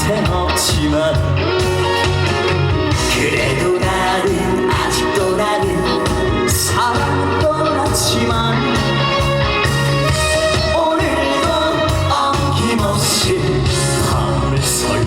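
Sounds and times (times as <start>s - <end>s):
man singing with sliding notes: 0.0s - 2.1s, 2.8s - 15.0s
band backing with bass line: 0.0s - 15.0s.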